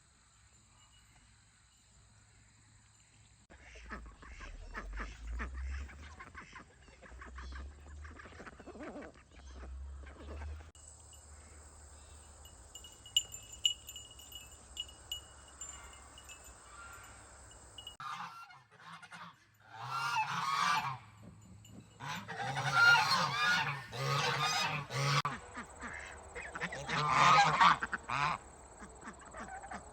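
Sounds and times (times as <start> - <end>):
farm fowl calling: 12.8 - 21.2, 22.0 - 29.9.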